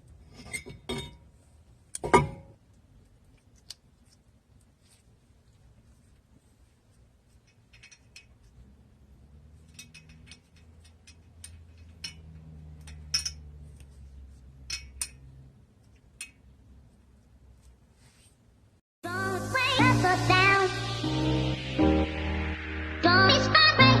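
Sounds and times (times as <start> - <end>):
metal tools clinking: 9.6 - 13.5, 14.6 - 15.2.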